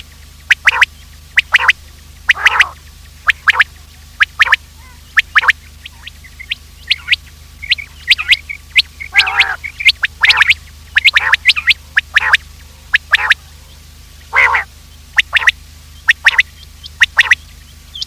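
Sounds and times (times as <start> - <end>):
quail calling: 0.0 - 18.0
steady low hum: 0.0 - 18.0.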